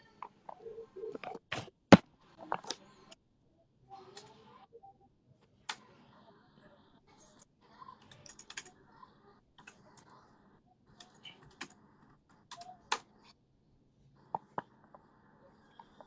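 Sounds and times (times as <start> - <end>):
computer keyboard typing: 8.0 - 8.8, 12.5 - 13.1.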